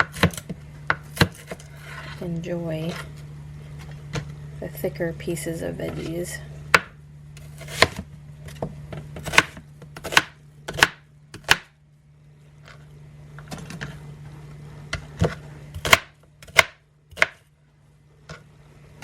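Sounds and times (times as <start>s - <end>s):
knife chopping onion on cutting board: 0.0s - 1.6s, 6.7s - 11.8s, 14.9s - 17.5s.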